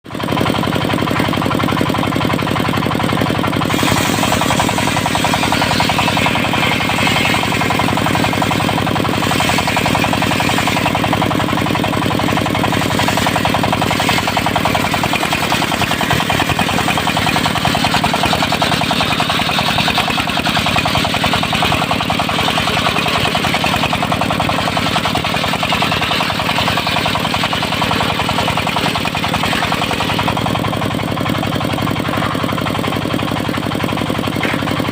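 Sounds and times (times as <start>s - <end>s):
sawmill engine chugging: 0.0s - 34.9s
saw blade cutting log hiss: 3.6s - 30.5s.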